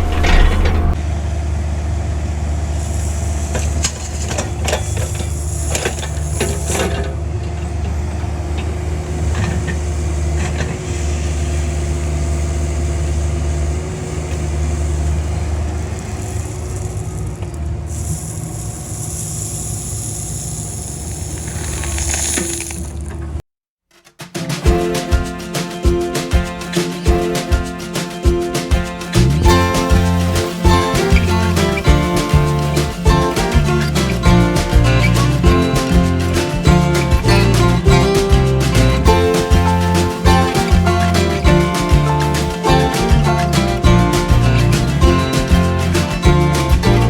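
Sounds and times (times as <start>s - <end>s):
excavator diesel engine running: 0.0s - 22.0s, 28.7s - 47.0s
hydraulic whine: 0.0s - 23.2s
bucket knocks and rattles: 24.3s - 47.0s.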